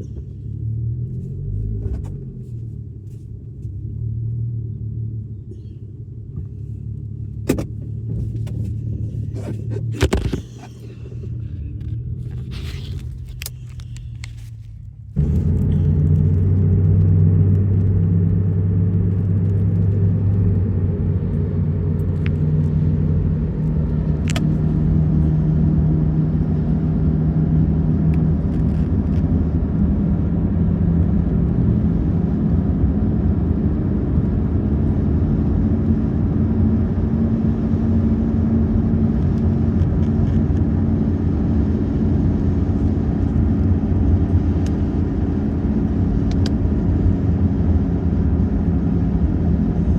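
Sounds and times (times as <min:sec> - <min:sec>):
car engine hum: 0:00.0 - 0:49.9
road rumble: 0:00.0 - 0:49.9.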